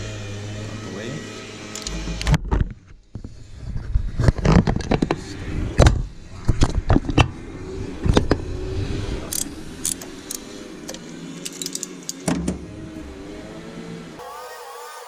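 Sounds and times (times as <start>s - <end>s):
metallic clicks of hand tools: 1.7s - 2.0s, 9.3s - 12.3s.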